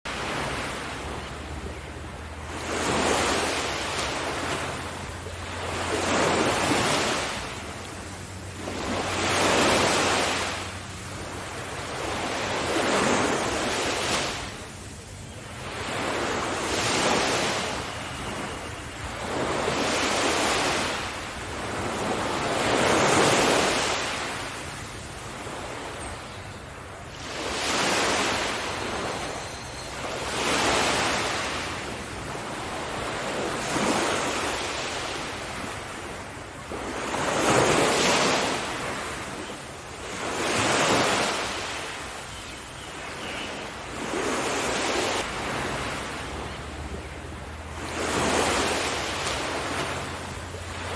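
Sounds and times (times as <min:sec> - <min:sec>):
sea waves breaking: 0:00.1 - 0:50.9.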